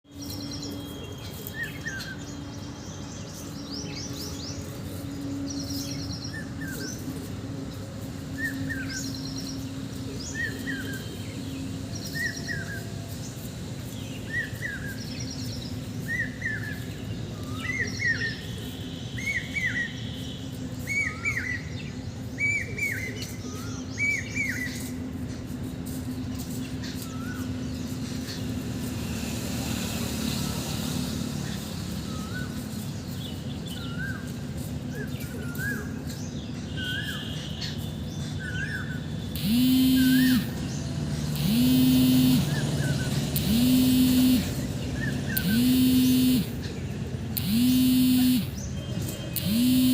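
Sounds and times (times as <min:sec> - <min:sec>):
steady low hum: 0:38.2 - 0:49.9.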